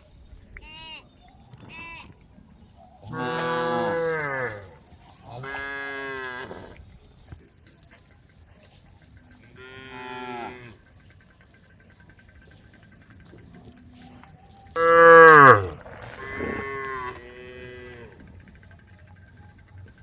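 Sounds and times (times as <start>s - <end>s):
cows mooing: 3.1s - 4.8s, 14.8s - 18.2s.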